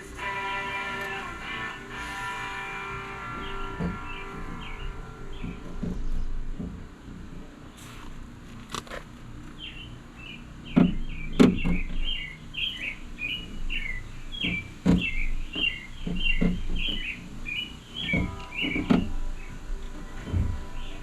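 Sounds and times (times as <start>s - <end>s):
bird chirping: 0.0s - 6.5s, 9.5s - 21.0s
sharp knocks: 14.4s - 17.1s, 18.0s - 19.5s.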